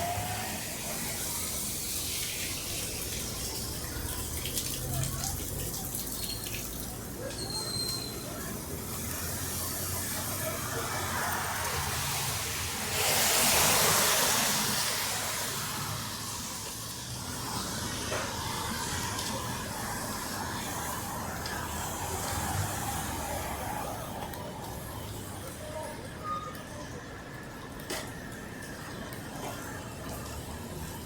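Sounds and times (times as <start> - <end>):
tyres hissing through water: 0.0 - 24.0
low traffic rumble: 0.0 - 31.0.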